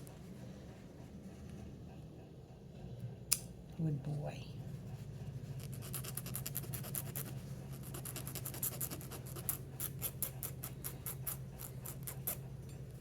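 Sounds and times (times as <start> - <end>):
grinder scratching toenail: 5.6 - 12.5.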